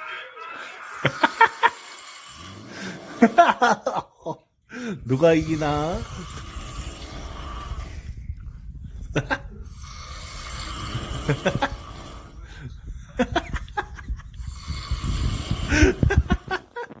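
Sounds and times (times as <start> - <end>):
person imitating snores: 1.0 - 3.6, 5.2 - 8.1, 9.7 - 12.4, 14.4 - 16.7
person snoring: 1.0 - 3.8, 4.8 - 8.5, 9.2 - 16.8.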